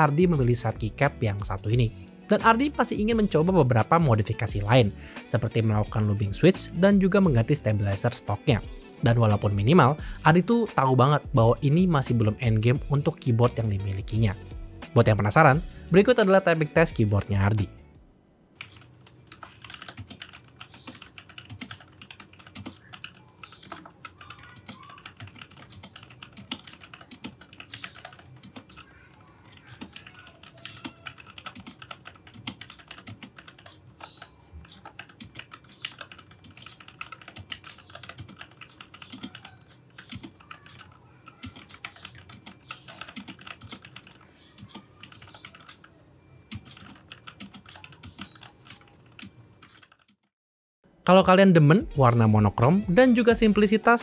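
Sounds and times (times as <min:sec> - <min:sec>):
mechanical keyboard typing: 0:18.6 - 0:50.2.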